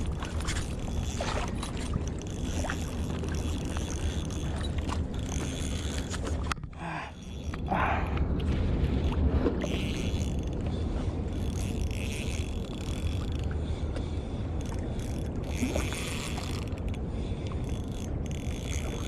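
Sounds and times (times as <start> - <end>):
fishing reel spinning: 0.0 - 6.4, 7.1 - 7.7, 9.0 - 10.6, 11.2 - 13.5, 14.6 - 17.0, 17.6 - 19.0
steady low rumble: 0.0 - 19.0.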